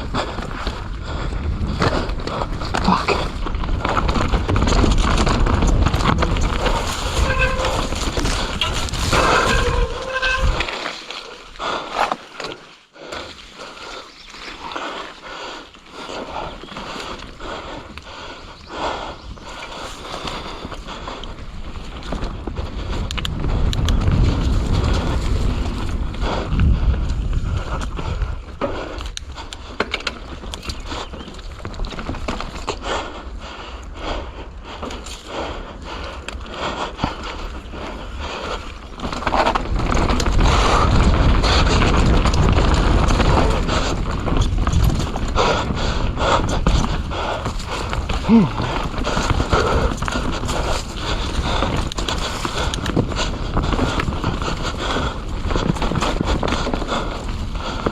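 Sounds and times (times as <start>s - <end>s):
wind buffeting microphone: 0.0s - 10.7s, 16.0s - 57.9s
bike rattling over bumps: 0.0s - 57.9s
bike tyres rolling on dirt: 0.0s - 57.9s
bike chain and frame clattering: 3.8s - 11.0s.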